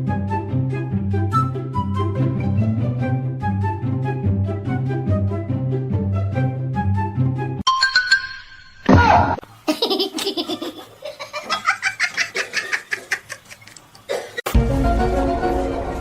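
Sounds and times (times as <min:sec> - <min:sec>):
background music: 0:00.0 - 0:09.0, 0:14.5 - 0:16.0
person laughing: 0:09.6 - 0:14.5.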